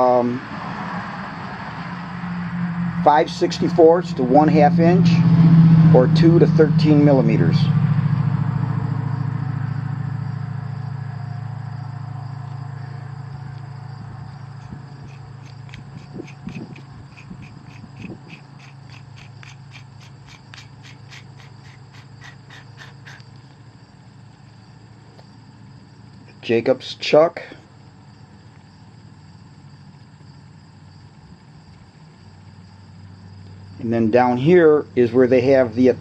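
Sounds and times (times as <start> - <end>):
drill chuck coasting hum: 8.4 - 26.6
light even ticks: 14.4 - 23.6.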